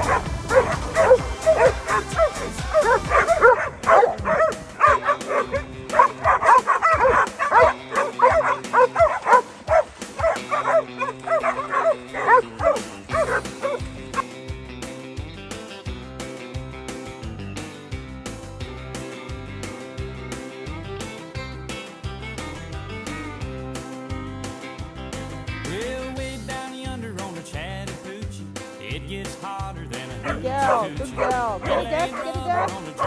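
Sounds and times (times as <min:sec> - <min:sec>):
dogs barking and yipping: 0:00.0 - 0:14.3, 0:30.1 - 0:33.0
background music: 0:00.0 - 0:33.0.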